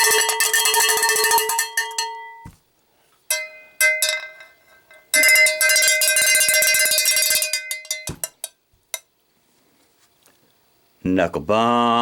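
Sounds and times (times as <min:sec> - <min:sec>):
cowbell rattling: 0:00.0 - 0:02.5, 0:03.3 - 0:08.6.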